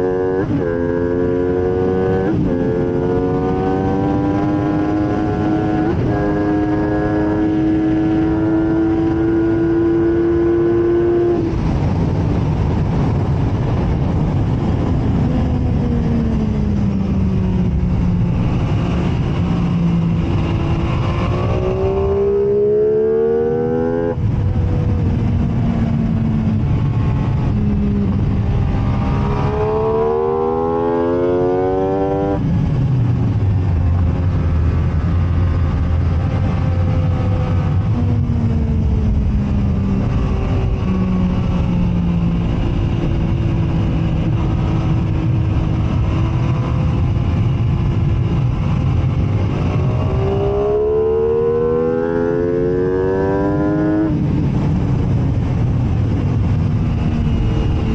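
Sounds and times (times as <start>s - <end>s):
motorcycle engine revving: 0.0s - 57.9s
wind rush: 0.0s - 57.9s.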